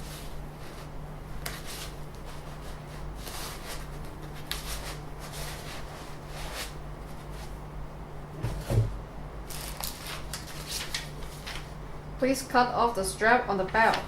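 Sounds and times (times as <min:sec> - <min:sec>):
dull thump: 0:08.4 - 0:09.0
packaging rustling and scraping: 0:09.5 - 0:11.7.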